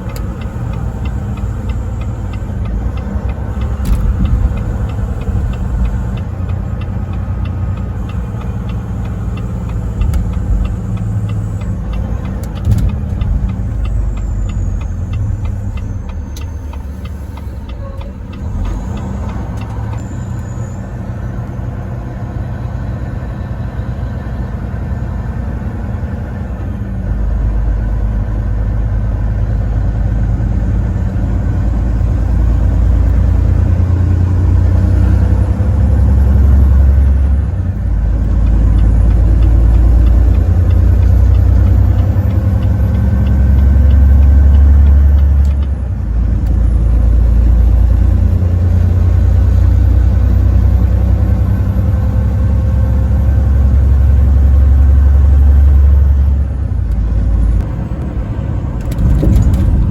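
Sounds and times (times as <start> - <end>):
light even ticking: 0.0 - 20.5, 32.1 - 50.1
truck engine and road rumble: 0.0 - 59.9.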